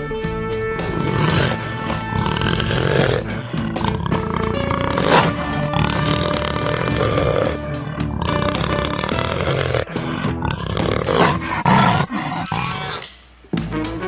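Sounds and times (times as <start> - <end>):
background music: 0.0 - 12.1, 13.4 - 14.0
big cat roaring: 0.9 - 13.1.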